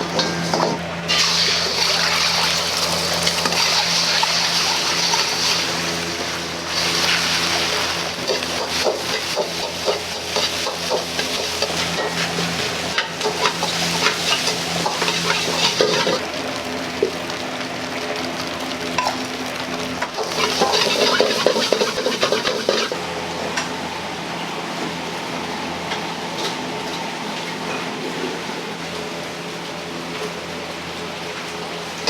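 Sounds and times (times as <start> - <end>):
food sizzling in a wok: 0.0 - 23.9
kitchen hum: 0.0 - 32.0.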